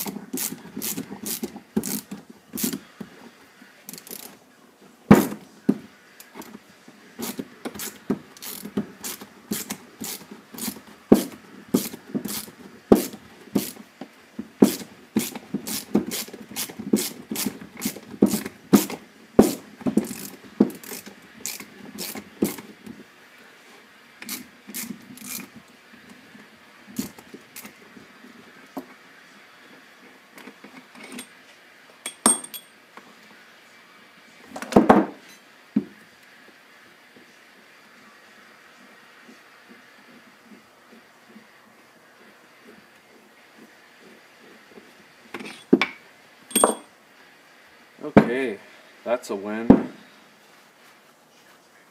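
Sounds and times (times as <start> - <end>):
metal tool clicks and knocks: 32.1 - 32.8, 45.4 - 46.9.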